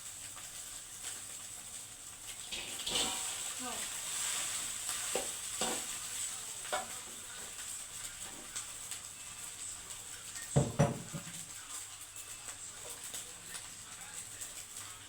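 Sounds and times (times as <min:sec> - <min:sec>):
food sizzling in a frying pan: 0:00.0 - 0:15.0
spatula knocking against pan: 0:10.6 - 0:11.4.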